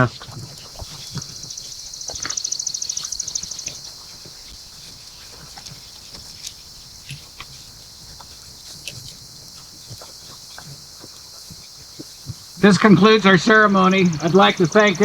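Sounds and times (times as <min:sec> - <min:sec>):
songbird high trill: 0:01.5 - 0:04.0, 0:12.6 - 0:15.0.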